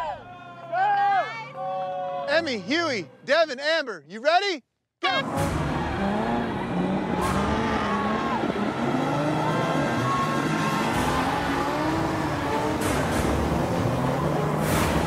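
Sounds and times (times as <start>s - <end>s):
car engines revving hard: 5.2s - 15.0s.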